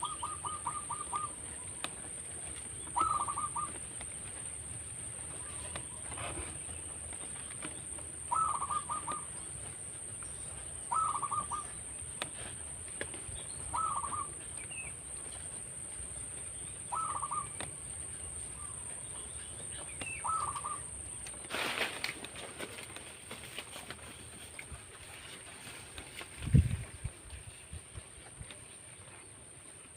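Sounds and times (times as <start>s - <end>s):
dove cooing: 0.0s - 1.4s, 2.9s - 3.9s, 8.2s - 9.5s, 10.9s - 11.8s, 13.7s - 14.4s, 16.9s - 17.7s, 20.2s - 20.8s.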